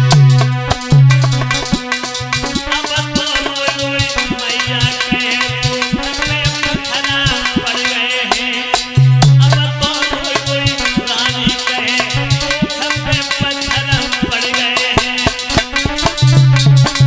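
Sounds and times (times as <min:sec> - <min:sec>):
pulsing low bass note: 0:00.0 - 0:02.4, 0:09.0 - 0:09.8
rattling shaker percussion: 0:00.0 - 0:08.1, 0:09.4 - 0:17.0
fast hand drum beats: 0:00.0 - 0:17.0.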